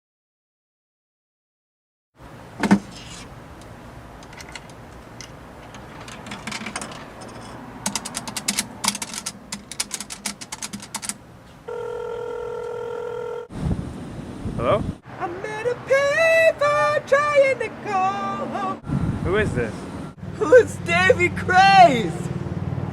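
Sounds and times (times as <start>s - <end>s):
telephone tone: 11.7s - 13.5s.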